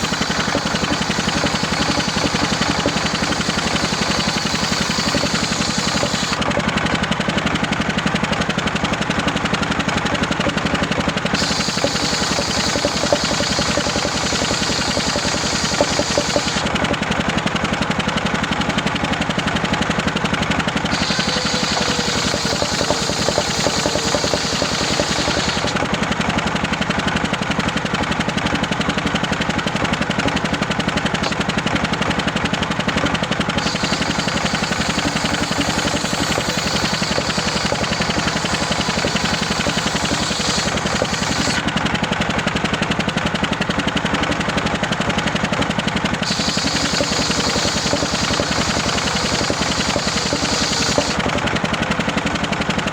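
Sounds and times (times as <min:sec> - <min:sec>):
saw blade cutting wood: 0:00.0 - 0:06.8, 0:10.1 - 0:17.0, 0:20.9 - 0:26.0, 0:31.2 - 0:31.5, 0:33.6 - 0:41.7, 0:46.2 - 0:51.3
engine-driven circular saw running: 0:00.0 - 0:52.9.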